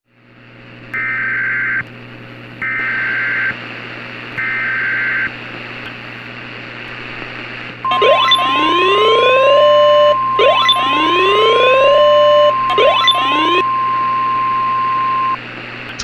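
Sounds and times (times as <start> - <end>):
steady alert tone: 7.9 - 9.6, 10.2 - 15.4
buzzing digital data tones: 7.9 - 15.4
rising siren-like tones: 7.9 - 15.4.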